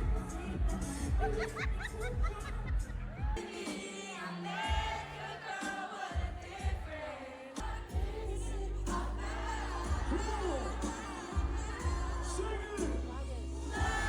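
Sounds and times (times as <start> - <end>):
deep bass beat: 0.0 - 3.4, 7.6 - 14.0
person singing: 3.4 - 14.0.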